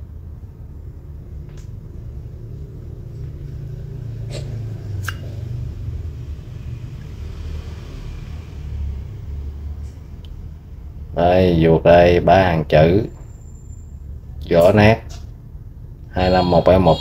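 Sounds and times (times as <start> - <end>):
low steady rumble: 0.0 - 7.4.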